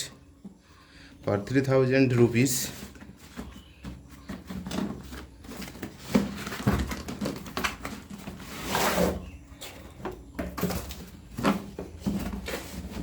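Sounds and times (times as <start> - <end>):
cardboard scraping rustle: 2.5 - 9.4, 10.7 - 13.0.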